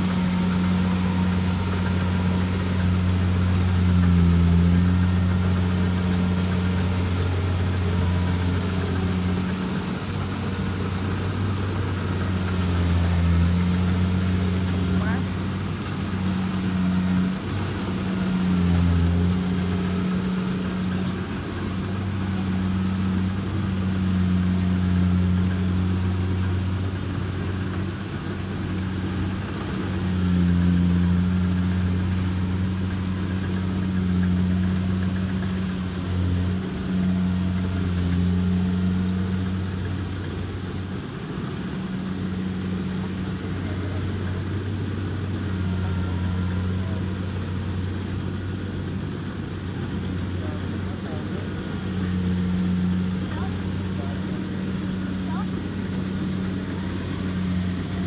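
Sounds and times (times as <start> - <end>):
diesel engine humming under load: 0.0 - 58.0.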